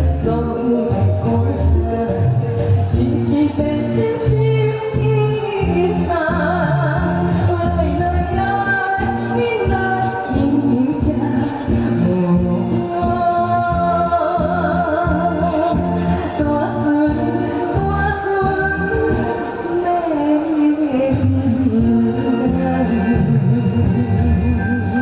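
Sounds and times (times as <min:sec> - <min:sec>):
person singing pop song: 0:00.0 - 0:25.0.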